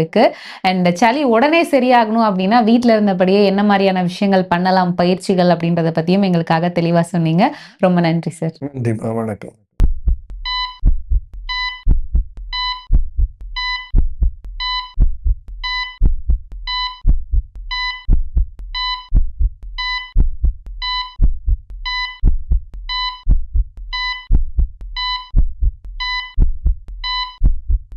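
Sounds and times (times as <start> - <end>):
low heartbeat thumps: 9.8 - 27.9
short electronic beep: 10.5 - 10.8, 11.5 - 11.8, 12.5 - 12.9, 13.6 - 13.9, 14.6 - 15.0, 15.6 - 16.0, 16.7 - 17.0, 17.7 - 18.1, 18.8 - 19.1, 19.8 - 20.2, 20.8 - 21.2, 21.9 - 22.2, 22.9 - 23.2, 24.0 - 24.3, 25.0 - 25.3, 26.0 - 26.4, 27.0 - 27.4.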